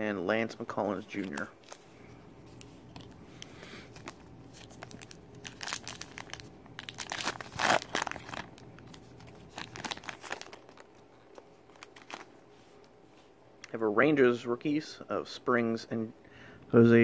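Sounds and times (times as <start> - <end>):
wrapper being torn and crinkled: 4.0 - 11.0, 11.7 - 12.3.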